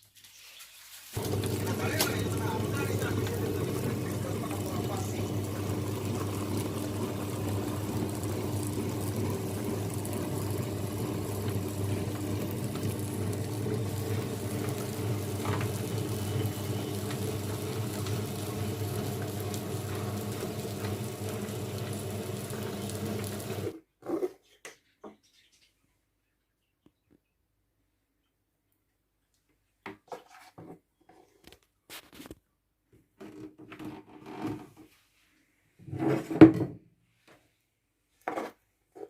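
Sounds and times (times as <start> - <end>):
wet grinder motor hum: 1.2 - 23.8.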